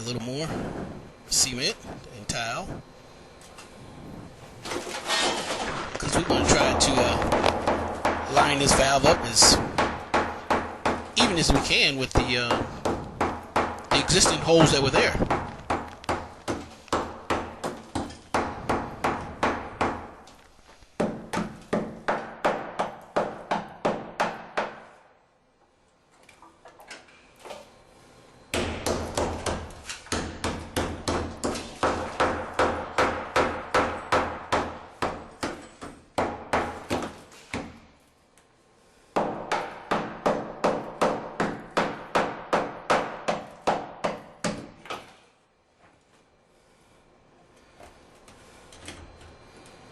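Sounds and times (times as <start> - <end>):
hammer chipping tile and concrete: 5.1 - 20.0.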